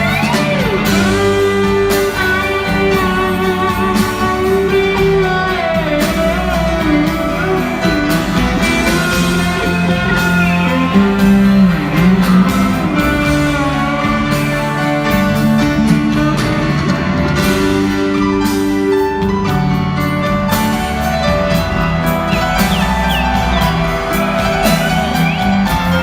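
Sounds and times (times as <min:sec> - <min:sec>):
electric guitar lead sliding notes: 0:00.0 - 0:19.7
live rock band playing: 0:00.0 - 0:26.0.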